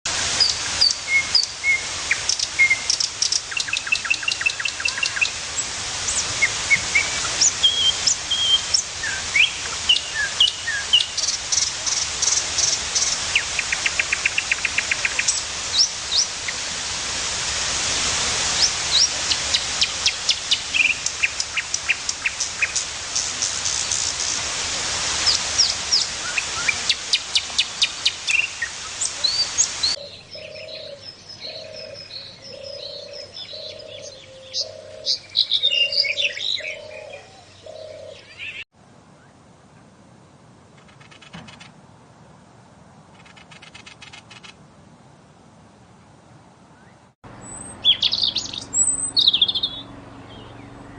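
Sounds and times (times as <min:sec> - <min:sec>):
steady background hiss: 0:00.1 - 0:50.8
birds chirping and trilling: 0:00.4 - 0:16.6, 0:18.6 - 0:24.4, 0:25.3 - 0:39.3, 0:46.7 - 0:50.9.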